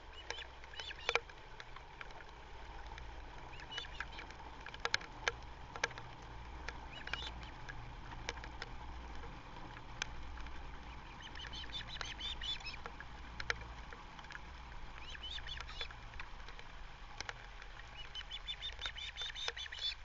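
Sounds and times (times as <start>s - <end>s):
ospreys chirping: 0.0s - 1.2s, 3.5s - 4.3s, 6.8s - 7.6s, 10.8s - 12.8s, 15.0s - 15.9s, 17.8s - 20.0s
low steady rumble: 0.0s - 20.0s
sharp clicks: 2.9s - 8.7s, 15.0s - 16.6s, 17.2s - 20.0s.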